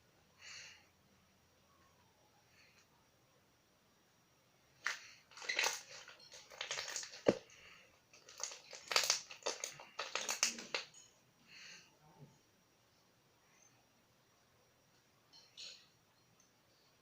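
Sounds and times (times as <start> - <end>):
slime crackling and popping: 4.8 - 10.9.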